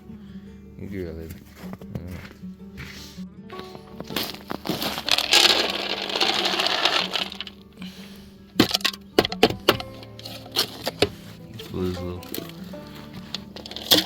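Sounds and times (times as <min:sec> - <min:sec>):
kibble pouring into a bowl: 0:04.7 - 0:07.6
kibble pieces clicking: 0:04.8 - 0:07.6.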